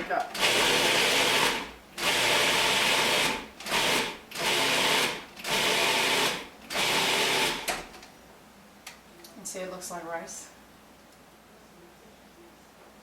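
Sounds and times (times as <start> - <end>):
food processor pulsing: 0.4 - 7.7.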